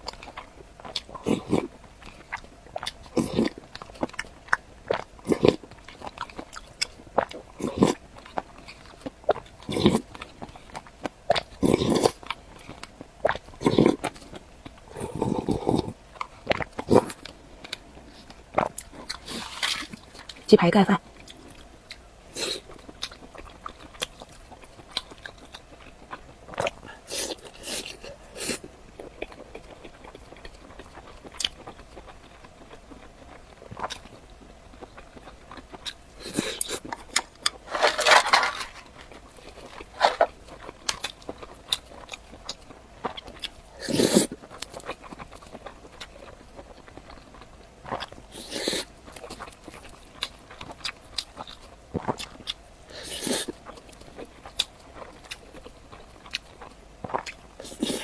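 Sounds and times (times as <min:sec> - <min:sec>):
crunchy chewing: 0:00.0 - 0:58.0.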